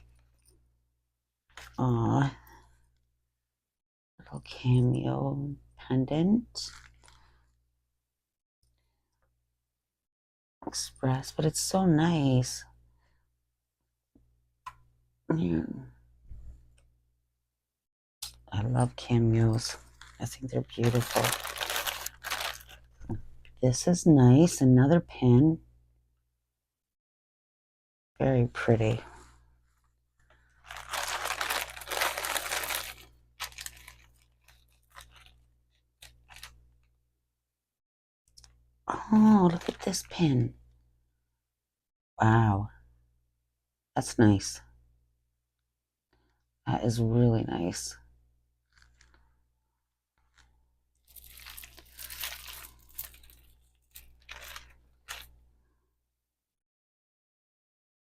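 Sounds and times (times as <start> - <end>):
packaging crinkling and rustling: 19.8 - 23.0, 30.3 - 36.8, 39.5 - 39.9, 48.7 - 49.2, 50.2 - 55.4.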